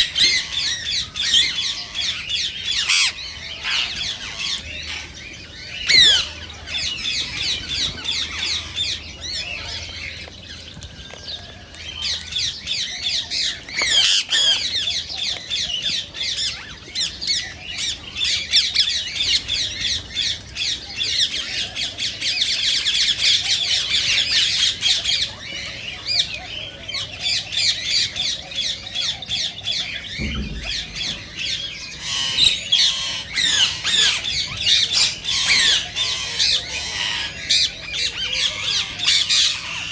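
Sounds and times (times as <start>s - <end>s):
parakeet squawking and chattering: 0.0s - 5.0s, 5.8s - 6.4s, 13.4s - 15.6s, 31.9s - 39.9s.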